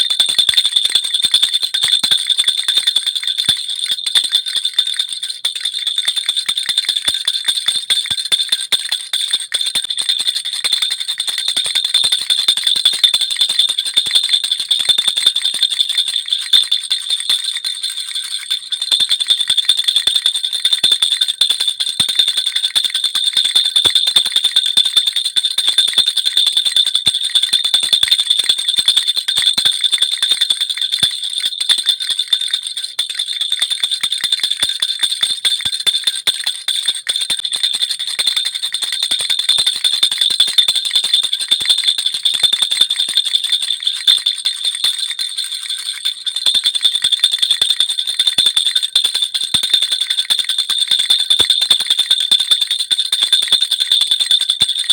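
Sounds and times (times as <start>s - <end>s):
baby rattle jingling: 0.0s - 21.3s, 45.9s - 47.1s.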